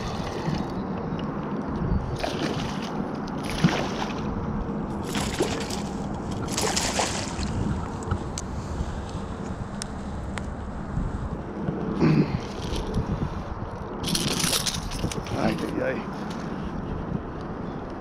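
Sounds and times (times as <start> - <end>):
water splashing and sloshing: 0.0 - 9.6, 12.4 - 16.6
wind noise on microphone: 0.0 - 18.0.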